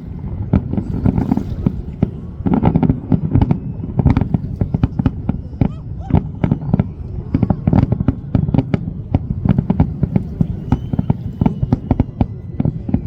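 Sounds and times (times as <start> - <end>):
fireworks bangs: 0.0 - 13.0
low rumble of booms: 0.0 - 13.0.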